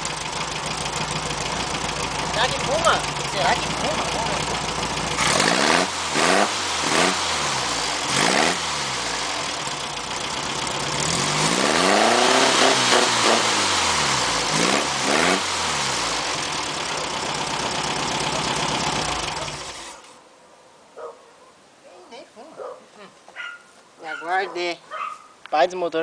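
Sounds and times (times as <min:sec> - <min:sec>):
engine idling and revving: 0:00.0 - 0:20.2.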